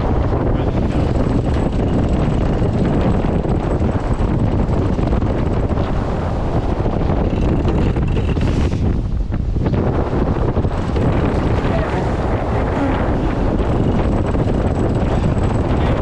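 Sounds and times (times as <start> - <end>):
water rushing along hulls: 0.0 - 16.0
wind buffeting microphone: 0.0 - 16.0.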